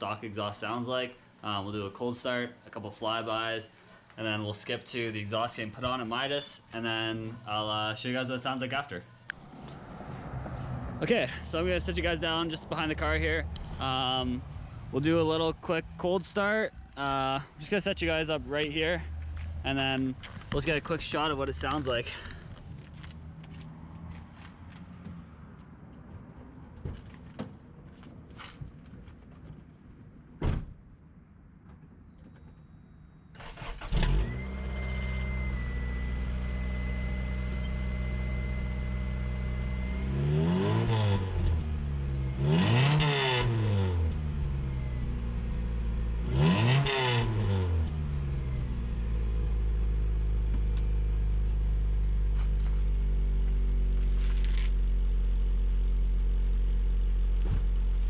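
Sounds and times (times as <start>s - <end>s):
engine revving: 9.3s - 16.0s, 33.4s - 51.6s
car engine cranking and idling: 9.3s - 30.1s, 33.4s - 58.0s.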